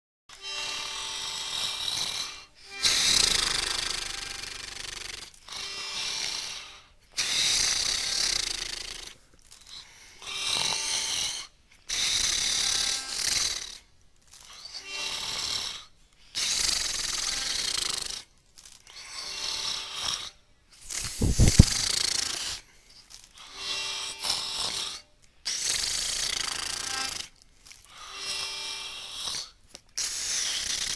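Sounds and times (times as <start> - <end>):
person snoring: 0.7 - 13.8, 20.9 - 22.6, 24.2 - 27.4, 28.1 - 30.9
loud deep snort: 0.8 - 9.2, 19.5 - 22.6, 28.4 - 30.9.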